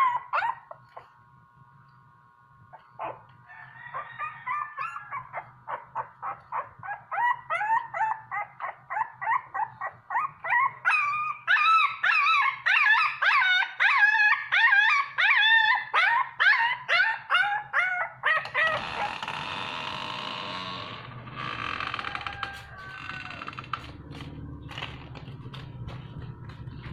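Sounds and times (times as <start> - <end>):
puppy whimpering yelps: 0.0 - 1.2, 2.7 - 19.2.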